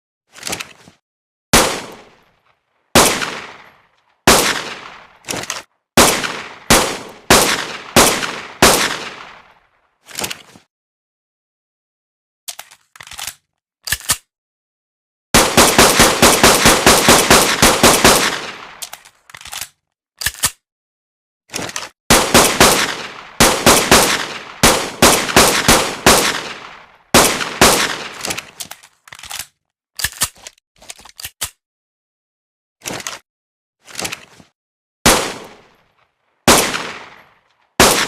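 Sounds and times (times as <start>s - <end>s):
pistol gunshots: 1.6s - 2.2s, 3.0s - 9.6s, 15.4s - 18.8s, 22.1s - 28.6s, 35.1s - 35.8s, 36.5s - 38.0s.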